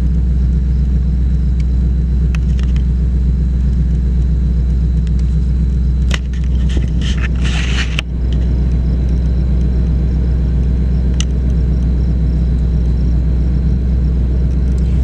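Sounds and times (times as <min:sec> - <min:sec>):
car engine idling: 0:00.0 - 0:15.0
small clicks: 0:01.6 - 0:02.9, 0:11.1 - 0:11.9
brief rustle: 0:06.2 - 0:08.5.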